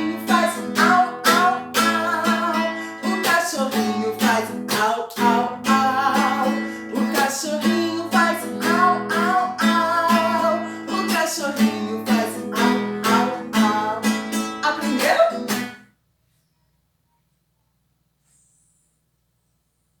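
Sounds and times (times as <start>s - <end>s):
woman singing: 0.0s - 15.6s
acoustic guitar strumming: 0.0s - 15.9s.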